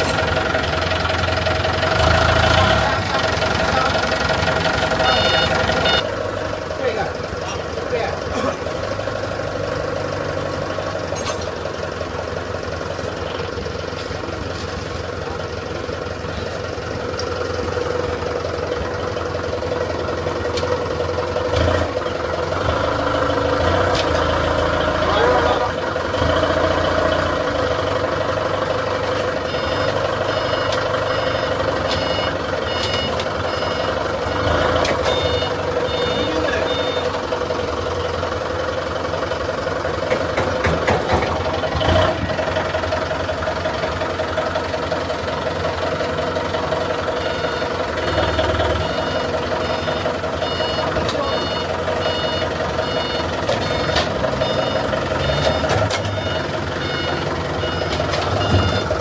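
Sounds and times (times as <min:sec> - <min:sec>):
diesel machine running: 0:00.0 - 0:59.0
reversing alarm beeping: 0:02.0 - 0:06.1, 0:28.8 - 0:37.3, 0:47.1 - 0:59.0
metal knocks: 0:40.0 - 0:41.9.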